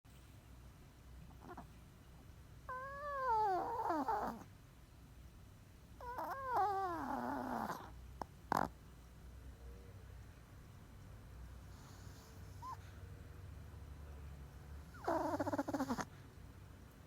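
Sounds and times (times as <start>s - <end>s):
pet snorting: 2.7s - 4.4s, 6.0s - 7.9s, 8.5s - 8.8s, 14.9s - 16.1s
pet snoring: 2.7s - 4.5s, 6.0s - 8.8s, 11.7s - 12.8s, 14.9s - 16.1s.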